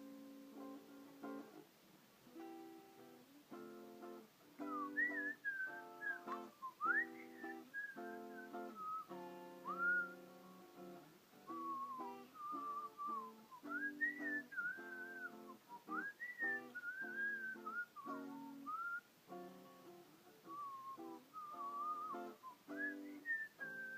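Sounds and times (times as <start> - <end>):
acoustic guitar strumming: 0.0 - 1.7, 2.3 - 23.9
whistled melody: 4.6 - 10.4, 11.5 - 19.1, 20.4 - 23.9.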